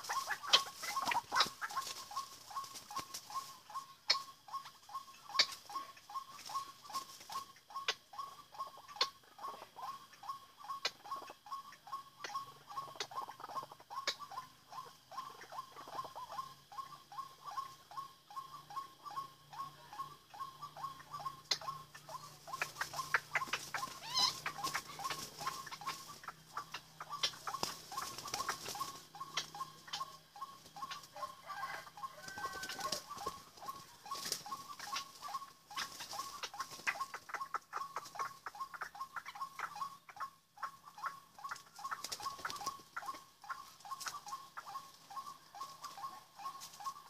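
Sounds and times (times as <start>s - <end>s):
bird repeated call notes: 0.0s - 47.0s
bird chirps and clicks: 4.0s - 9.2s, 10.7s - 13.2s, 14.0s - 14.5s, 20.3s - 31.1s.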